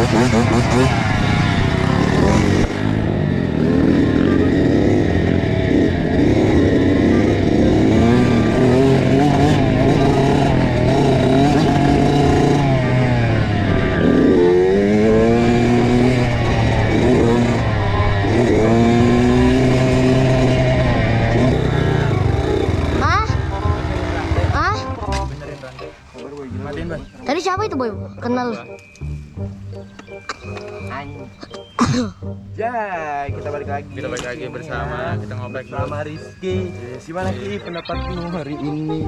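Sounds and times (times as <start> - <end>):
dirt bike engine revving: 0.0 - 25.8.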